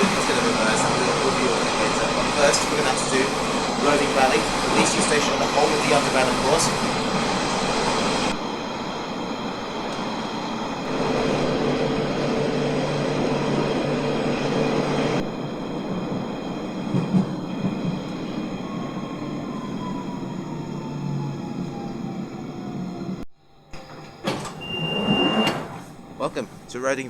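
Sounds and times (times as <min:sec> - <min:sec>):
train rumbling: 0:00.0 - 0:27.0
traction motor tone: 0:18.0 - 0:27.0.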